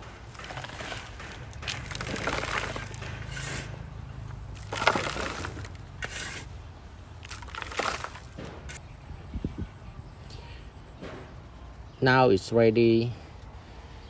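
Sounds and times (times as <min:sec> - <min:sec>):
soil scraping and pouring: 0:00.0 - 0:08.8.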